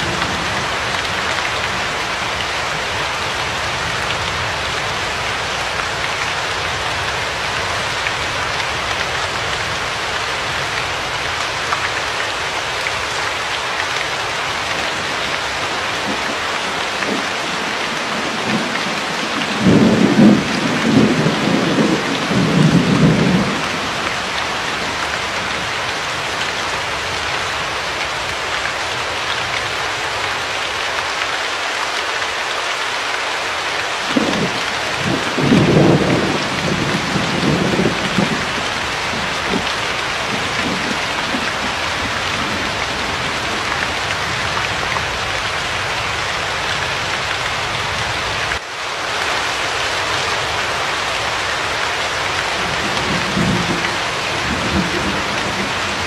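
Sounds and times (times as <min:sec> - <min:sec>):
steady rain: 0:00.0 - 0:56.0
thunder rumbling: 0:17.0 - 0:24.0, 0:34.1 - 0:44.8, 0:52.5 - 0:56.0.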